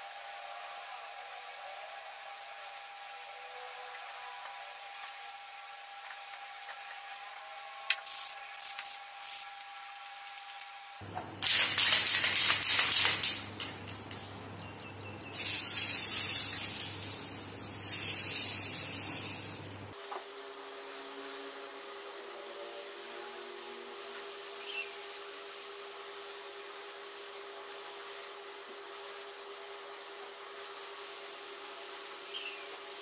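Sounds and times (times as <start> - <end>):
aerosol spray can hissing: 8.0 - 9.6, 11.4 - 13.8, 15.4 - 19.7, 23.0 - 29.4, 30.5 - 33.0.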